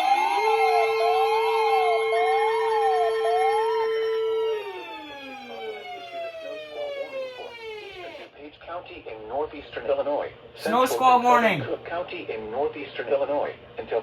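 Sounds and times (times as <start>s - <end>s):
steady siren tone: 0.0s - 8.3s
wailing siren: 0.0s - 8.3s.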